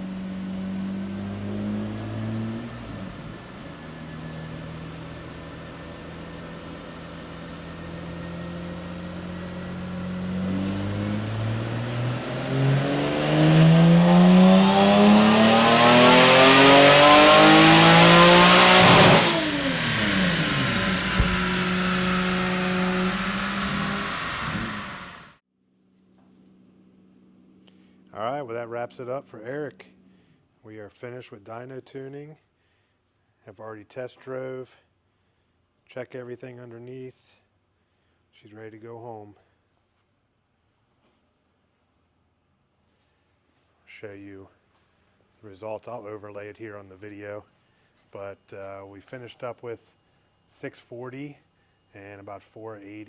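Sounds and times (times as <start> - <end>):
car engine revving: 0.0 - 25.4.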